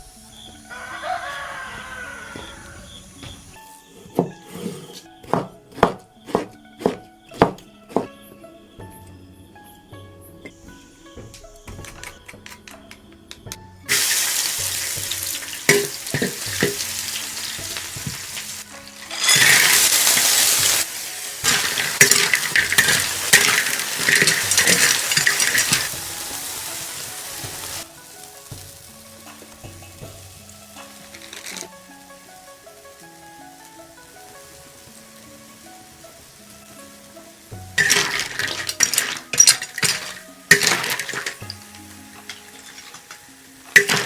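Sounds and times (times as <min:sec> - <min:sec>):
food sizzling in a pan: 0:00.0 - 0:08.1, 0:13.9 - 0:44.0
soft background music: 0:00.0 - 0:44.0
utensil clinking and scraping: 0:03.2 - 0:08.1, 0:13.9 - 0:27.9, 0:30.8 - 0:31.7, 0:37.8 - 0:44.0.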